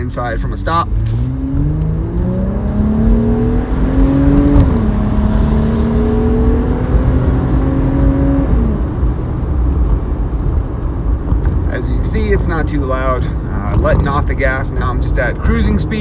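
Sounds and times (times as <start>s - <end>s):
car engine accelerating: 0.0s - 16.0s.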